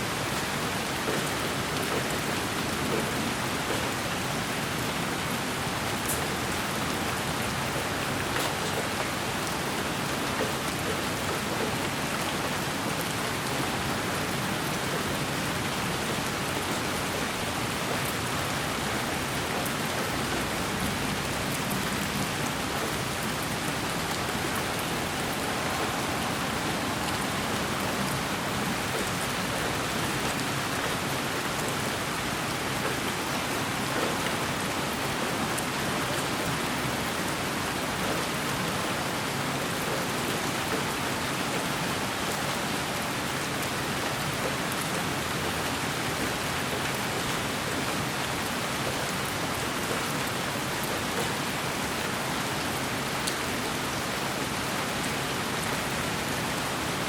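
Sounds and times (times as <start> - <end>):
steady rain-like hiss: 0.0 - 57.0
faint raindrop ticks: 6.0 - 6.3, 33.7 - 34.4.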